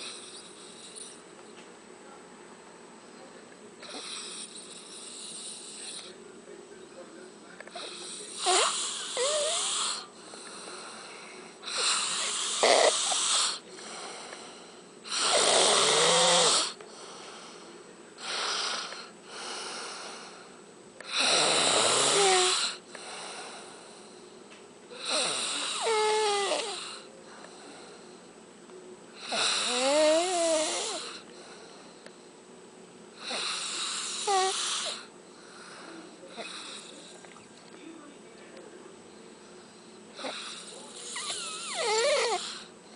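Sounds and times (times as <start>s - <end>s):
quiet breathing: 0.0s - 1.2s, 3.2s - 15.2s, 16.2s - 20.7s, 22.2s - 28.4s, 29.2s - 32.5s, 33.1s - 42.9s
man snoring with whistle: 7.8s - 10.1s, 11.6s - 13.6s, 15.1s - 16.8s, 21.1s - 22.8s, 25.0s - 27.1s, 29.2s - 31.2s, 33.2s - 35.1s, 40.2s - 42.7s.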